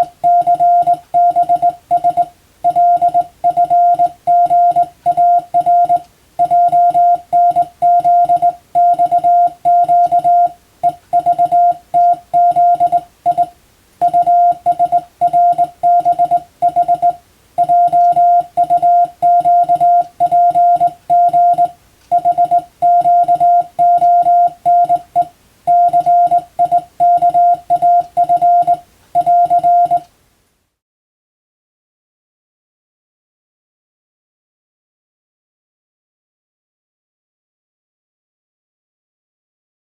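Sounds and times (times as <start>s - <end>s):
morse code beeps: 0.0s - 30.1s.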